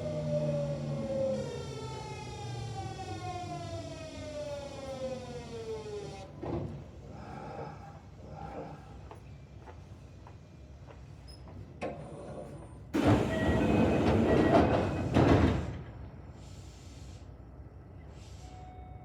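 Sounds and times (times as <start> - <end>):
train knocks and rattles: 6.3 - 7.0, 9.0 - 16.4
train inverter whining: 13.0 - 16.4.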